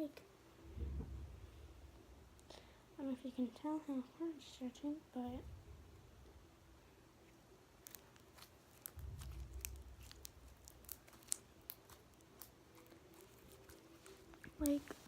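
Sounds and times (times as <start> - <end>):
brief low rumble: 0.6 - 2.2.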